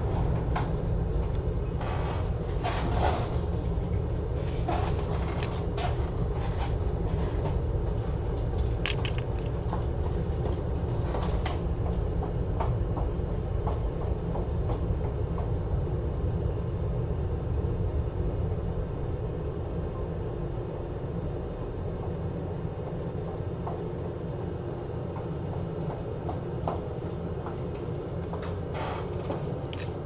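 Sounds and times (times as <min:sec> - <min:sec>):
fan whirring: 0:00.0 - 0:30.0
small tools clicking and tapping: 0:08.8 - 0:09.5.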